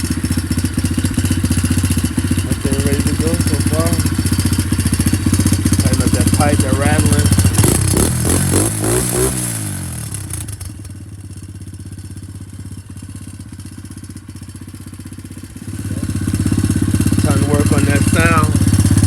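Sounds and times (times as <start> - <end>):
dirt bike engine revving: 0.0 - 10.7, 15.6 - 19.0.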